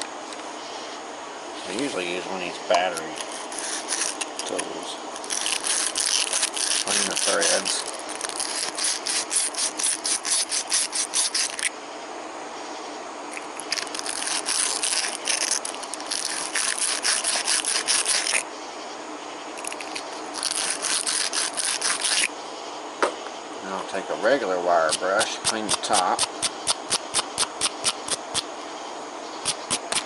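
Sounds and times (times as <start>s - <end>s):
wire brush scrubbing threads: 2.9s - 11.7s, 13.4s - 18.4s, 19.6s - 22.3s.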